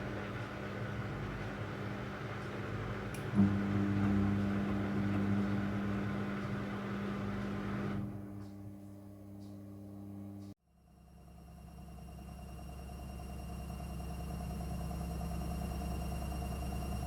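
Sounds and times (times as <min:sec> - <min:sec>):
washing machine humming: 0:00.0 - 0:10.6
click: 0:03.1 - 0:03.5.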